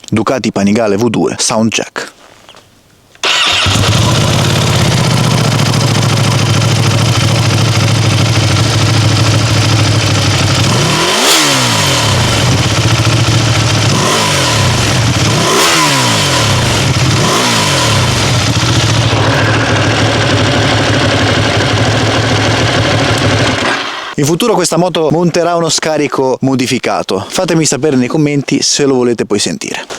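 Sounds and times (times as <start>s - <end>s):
motorcycle engine revving: 3.2s - 24.2s.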